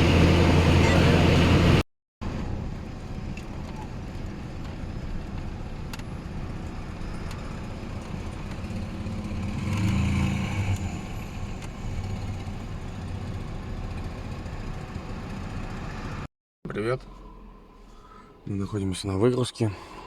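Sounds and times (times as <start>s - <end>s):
truck engine: 0.0s - 16.3s
road noise: 0.0s - 20.0s.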